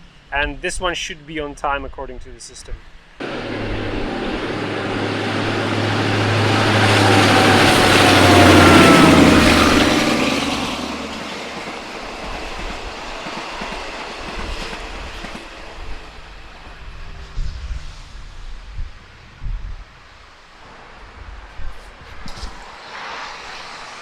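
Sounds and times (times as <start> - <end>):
train passing: 3.1 - 19.2, 20.2 - 24.0
falling pitch tone: 3.2 - 11.2.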